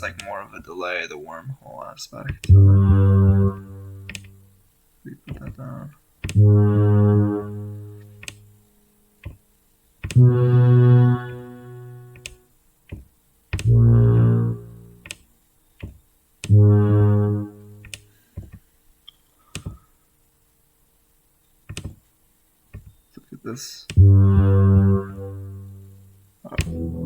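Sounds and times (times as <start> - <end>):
low synthesizer notes: 2.3 - 4.5, 6.3 - 8.3, 10.1 - 12.3, 13.6 - 15.2, 16.4 - 18.0, 24.0 - 27.0
soft mouse clicks: 4.0 - 4.4, 8.0 - 8.5, 12.1 - 13.7, 15.0 - 16.5, 17.8 - 19.8.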